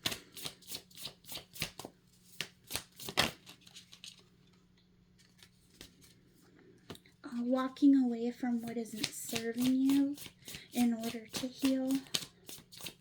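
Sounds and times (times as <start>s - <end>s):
cards being shuffled: 0.0s - 4.6s, 5.2s - 6.2s, 8.6s - 13.0s.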